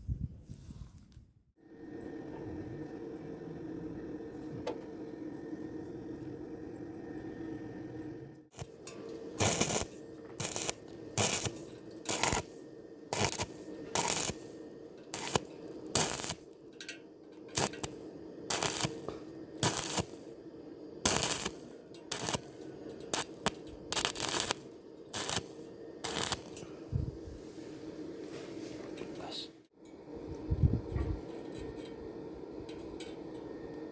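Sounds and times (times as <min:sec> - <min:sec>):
steady hum: 0:01.6 - 0:29.3
welding arc crackling: 0:08.5 - 0:20.4, 0:21.0 - 0:26.6.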